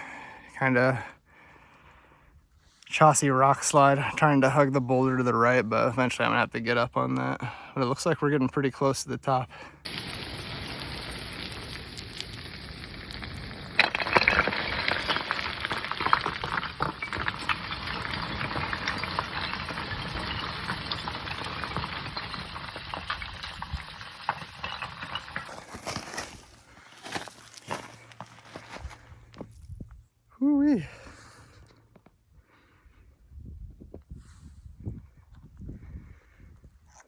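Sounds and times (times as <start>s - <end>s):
stones crunching and clattering: 9.9s - 29.8s.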